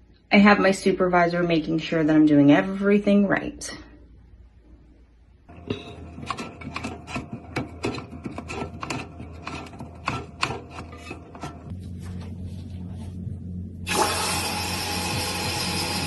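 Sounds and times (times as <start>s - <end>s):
low steady hum: 0.0s - 16.0s
toilet tank parts clicking and knocking: 5.6s - 11.7s.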